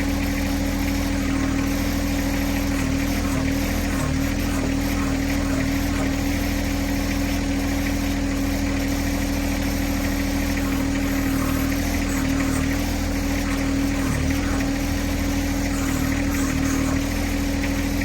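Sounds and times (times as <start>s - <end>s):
tractor diesel engine running: 0.0s - 18.0s.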